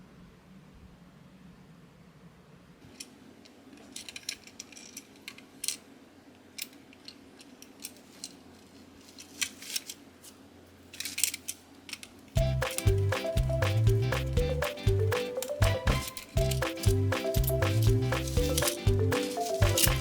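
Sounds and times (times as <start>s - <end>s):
handling plastic toy parts: 2.8s - 12.8s, 15.2s - 20.0s.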